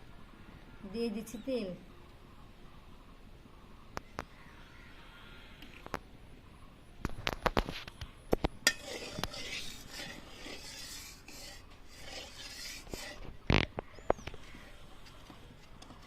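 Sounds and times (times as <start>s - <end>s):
scraping in a pan: 7.6s - 13.8s
utensils clinking on metal cookware: 8.6s - 13.2s.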